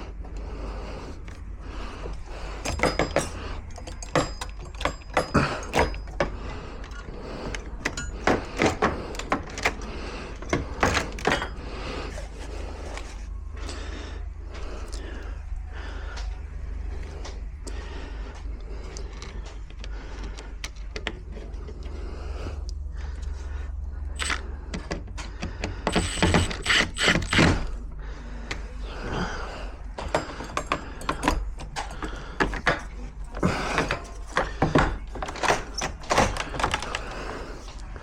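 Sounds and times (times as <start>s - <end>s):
clicks and clinks of lock hardware: 2.0s - 12.3s, 24.2s - 27.8s, 29.9s - 37.9s.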